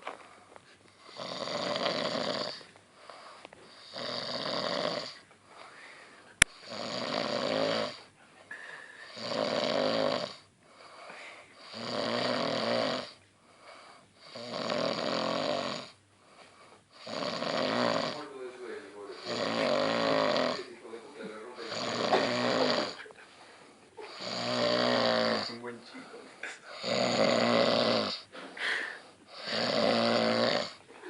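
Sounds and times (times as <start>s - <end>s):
quiet breaths: 0.0s - 31.0s
man snoring: 1.0s - 2.7s, 3.7s - 5.2s, 6.5s - 8.1s, 9.0s - 10.9s, 11.6s - 13.2s, 14.2s - 16.0s, 16.9s - 18.4s, 19.1s - 20.8s, 21.6s - 23.1s, 24.1s - 25.8s, 26.7s - 28.3s, 29.3s - 30.8s.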